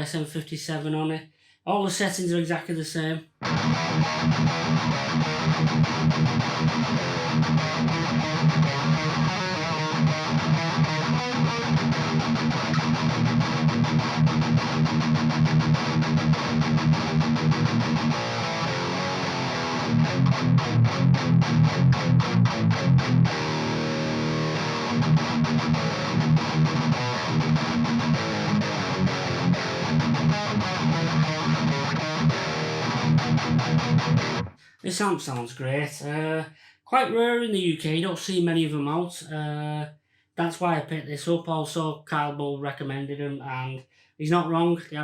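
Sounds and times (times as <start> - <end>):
distorted electric guitar chugging: 3.4 - 34.7.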